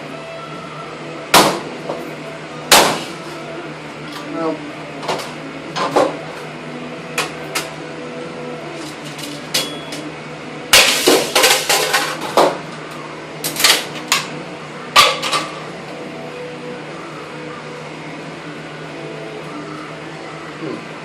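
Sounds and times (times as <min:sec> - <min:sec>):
hard blows smashing plastic printer: 0:10.8 - 0:12.6.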